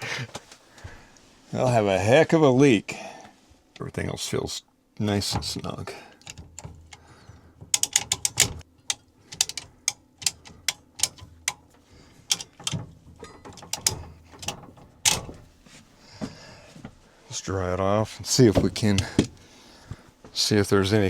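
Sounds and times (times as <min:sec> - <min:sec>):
hand tool clicks and ratcheting: 0:06.2 - 0:07.0, 0:07.7 - 0:15.3.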